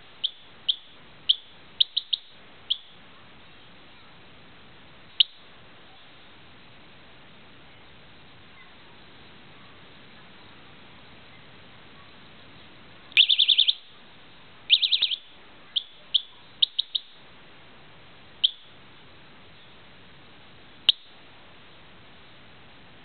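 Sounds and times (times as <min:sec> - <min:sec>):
bicycle alarm electronic chirps: 0:00.2 - 0:03.0, 0:05.2 - 0:05.5, 0:13.2 - 0:13.9, 0:14.7 - 0:17.2, 0:18.4 - 0:18.8, 0:20.8 - 0:21.2.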